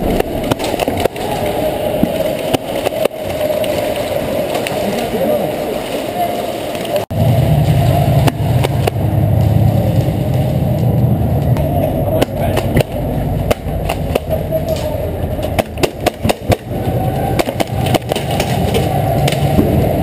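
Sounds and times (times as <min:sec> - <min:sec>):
steady low rumble: 0:07.1 - 0:20.0
airsoft guns firing: 0:15.5 - 0:16.7.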